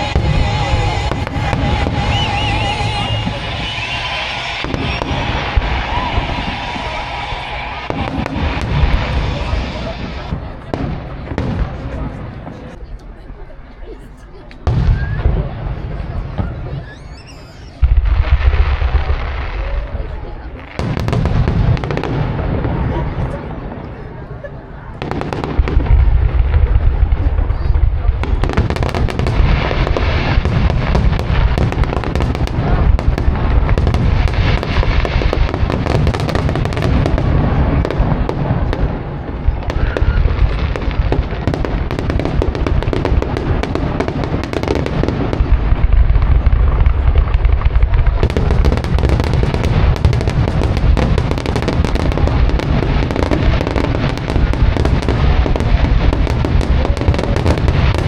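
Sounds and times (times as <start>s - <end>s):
heavy low booms: 0.0s - 13.0s, 14.6s - 58.0s
firework bursts and crackle: 0.0s - 58.0s.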